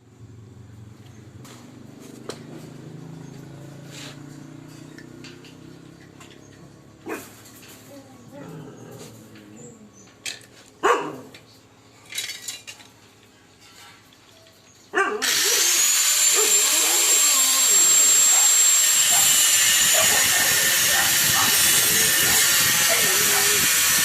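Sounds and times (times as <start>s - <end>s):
power tool running: 15.2s - 24.0s.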